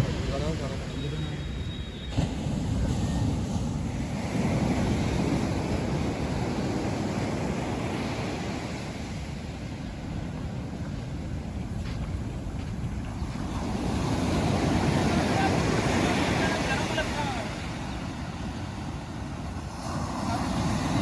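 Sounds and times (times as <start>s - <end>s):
ocean waves on beach: 0.0s - 21.0s
wind rumbling on microphone: 0.0s - 21.0s.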